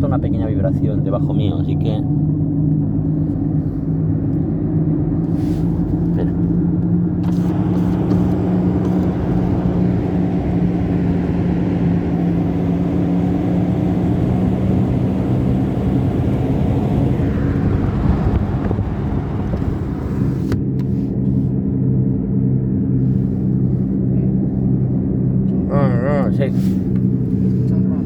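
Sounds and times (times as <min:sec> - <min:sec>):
tyre and road noise: 0:05.2 - 0:21.5
wheel bearing humming: 0:05.4 - 0:20.9.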